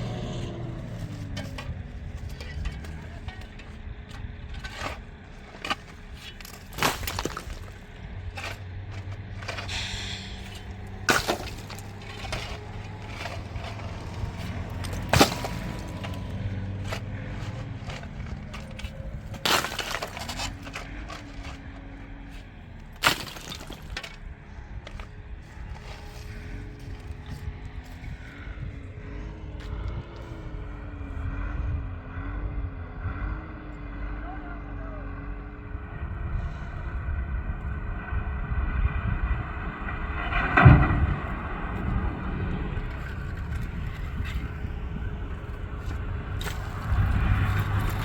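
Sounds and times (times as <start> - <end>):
sharp knocks and cracks: 0.9 - 9.8, 10.4 - 24.3.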